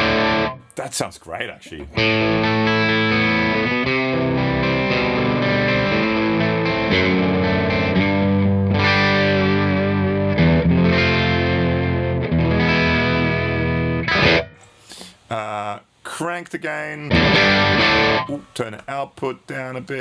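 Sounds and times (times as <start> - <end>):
overdriven electric guitar chords: 0.0 - 0.7, 2.0 - 14.7, 17.1 - 18.3.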